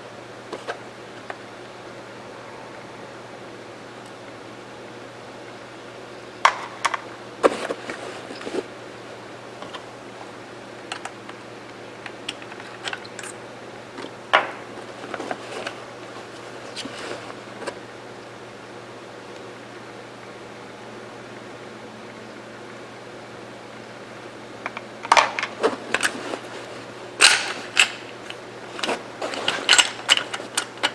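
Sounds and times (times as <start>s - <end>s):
faint steady hum: 0.0s - 30.9s
metal rifle parts clicking: 27.2s - 30.9s.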